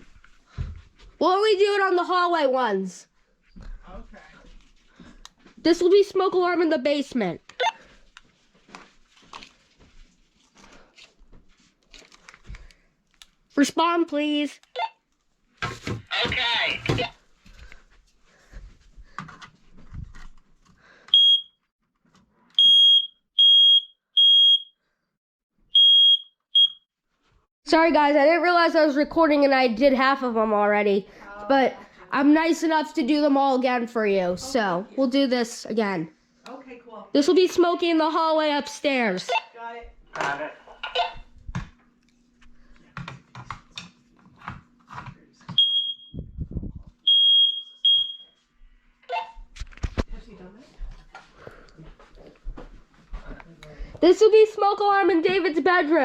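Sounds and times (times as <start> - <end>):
smoke alarm beeping: 21.1 - 21.6, 22.6 - 24.8, 25.7 - 26.8, 45.5 - 46.3, 47.0 - 48.4.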